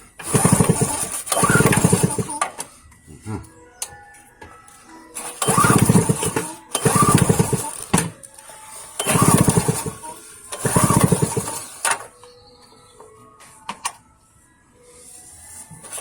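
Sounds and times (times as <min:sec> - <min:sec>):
generator recoil pull-start cranking: 0:00.2 - 0:02.7, 0:05.2 - 0:08.2, 0:08.8 - 0:12.1.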